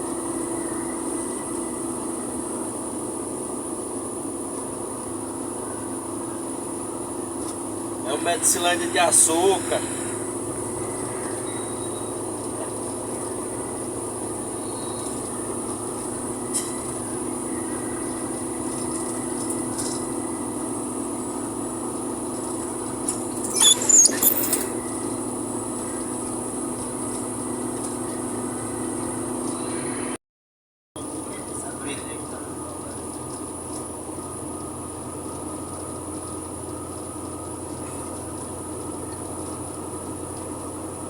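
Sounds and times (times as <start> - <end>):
vehicle engine and road drone: 0.0 - 30.2, 31.0 - 41.0
high-pitched squeal: 23.4 - 24.9
thin high whine: 23.4 - 25.2.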